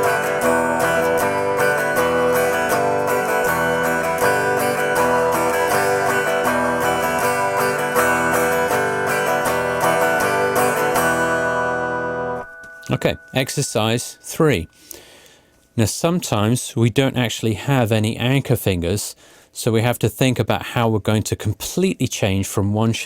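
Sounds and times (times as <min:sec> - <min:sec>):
guitar strumming chords: 0:00.0 - 0:15.3.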